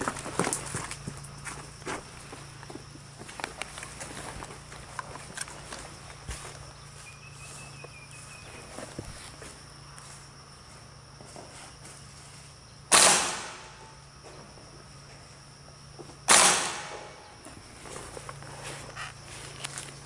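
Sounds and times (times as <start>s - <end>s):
high insect drone: 0.0s - 20.0s
airsoft gun shots: 12.9s - 13.8s, 16.2s - 17.2s.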